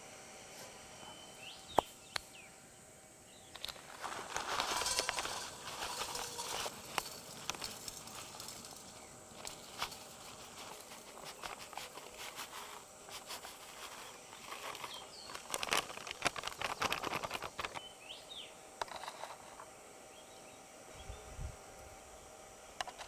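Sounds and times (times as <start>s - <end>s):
bird chirping: 1.0s - 2.6s
cooking clicks and rattles: 3.6s - 17.8s.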